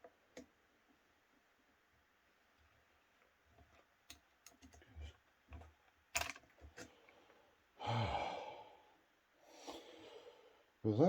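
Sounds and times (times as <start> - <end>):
small parts clicking and tapping: 3.2 - 6.9
man loud voiced breath: 7.8 - 8.8.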